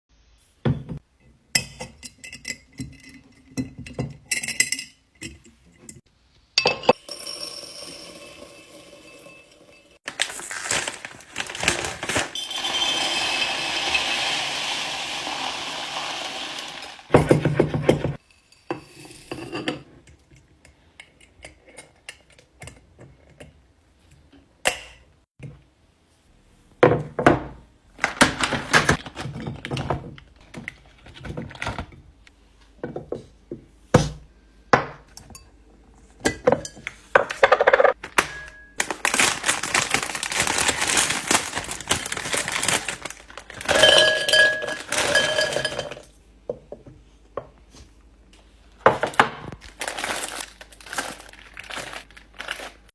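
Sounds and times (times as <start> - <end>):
rustling: 10.0 - 12.4, 38.8 - 46.0.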